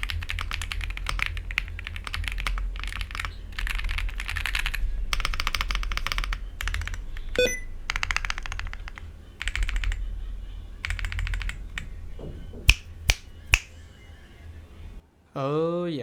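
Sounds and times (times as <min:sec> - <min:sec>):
typing on mechanical keyboard: 0:00.0 - 0:10.1, 0:10.8 - 0:12.0
steady low hum: 0:00.0 - 0:15.0.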